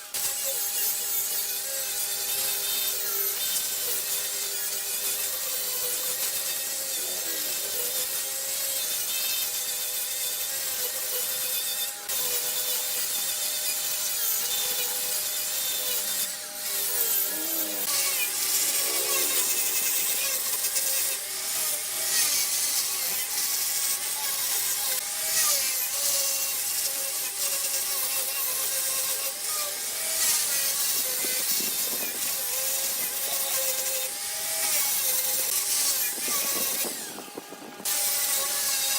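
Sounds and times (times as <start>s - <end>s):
tool cutting wood hissing: 0.0s - 38.9s
lathe humming: 14.6s - 22.7s.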